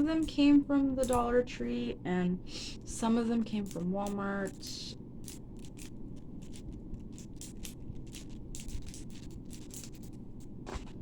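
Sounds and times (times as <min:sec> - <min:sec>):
plastic links clicking: 0:03.5 - 0:10.6.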